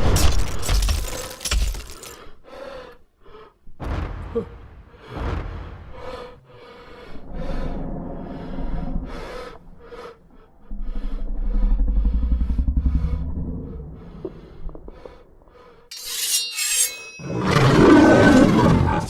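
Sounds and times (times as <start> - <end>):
low pulsing rumble: 7.2 - 15.8
rasping scraping strokes: 15.9 - 17.5.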